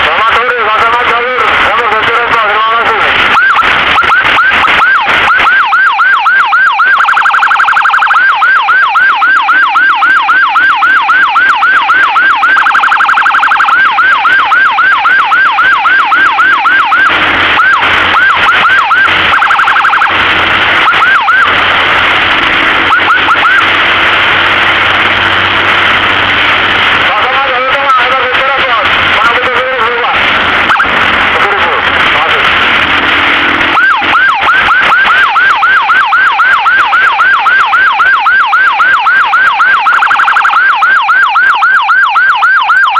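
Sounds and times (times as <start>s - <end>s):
siren yelping: 0.0s - 42.9s
vehicle and road noise: 0.0s - 42.9s
steady buzzing tone: 30.0s - 34.6s.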